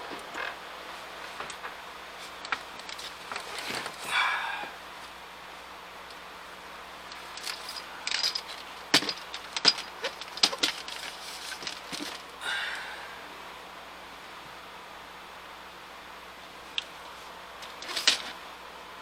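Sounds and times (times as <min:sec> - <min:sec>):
sharp clicks and knocks: 0:07.1 - 0:12.3
scrape or rustle: 0:10.5 - 0:12.2.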